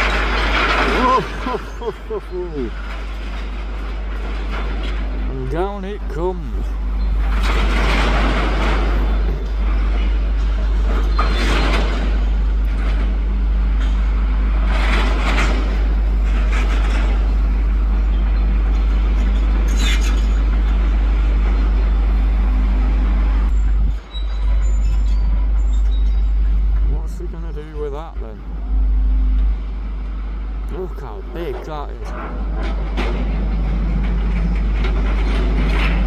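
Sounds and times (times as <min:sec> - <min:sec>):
excavator diesel engine rumbling: 0:04.7 - 0:11.1.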